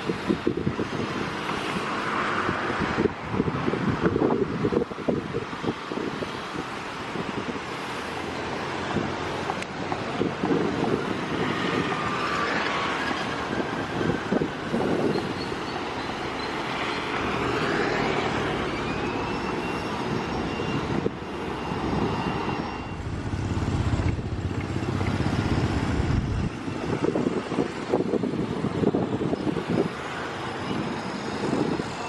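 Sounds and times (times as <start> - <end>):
road traffic passing: 0.0 - 32.0
engine whine: 7.8 - 32.0.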